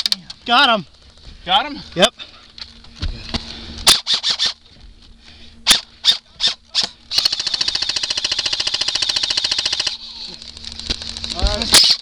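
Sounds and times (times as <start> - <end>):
airsoft gun full-auto burst: 3.9 - 4.6, 7.1 - 12.0
airsoft gun single shots: 3.9 - 4.6.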